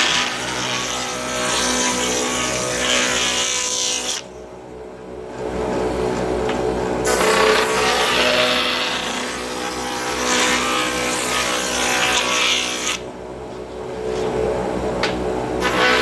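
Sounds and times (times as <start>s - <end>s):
router cutting wood: 0.0s - 4.2s, 7.0s - 13.1s, 15.6s - 16.0s
router motor running: 15.6s - 16.0s.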